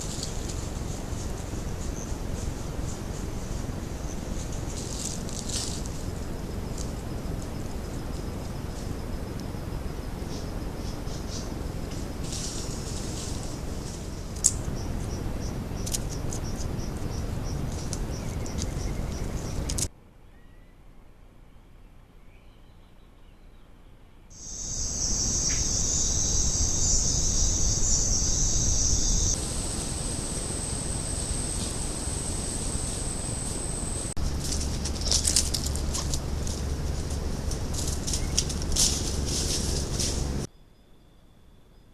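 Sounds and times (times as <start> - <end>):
high insect drone: 0.0 - 19.9, 24.3 - 40.5
steady outdoor hiss: 0.0 - 41.9
low rumbling noise: 24.0 - 40.5.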